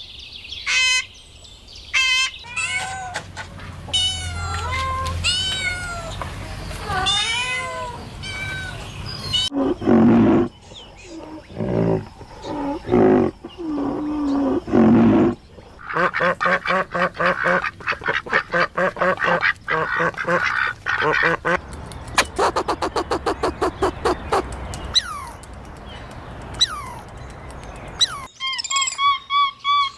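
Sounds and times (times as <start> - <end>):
cat meowing: 2.4 - 3.2, 3.9 - 6.2, 6.8 - 9.6
low drawn-out animal calls: 8.2 - 21.6
ducks quacking: 15.8 - 24.6.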